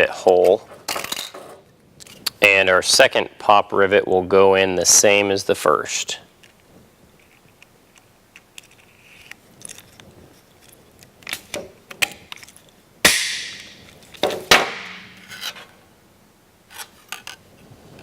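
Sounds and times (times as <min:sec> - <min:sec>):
sheet metal ringing: 0:13.1 - 0:13.8, 0:14.5 - 0:15.4.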